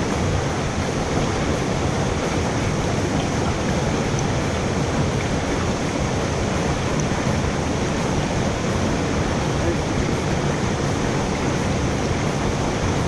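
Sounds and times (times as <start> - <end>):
mountain stream rushing: 0.0 - 13.0.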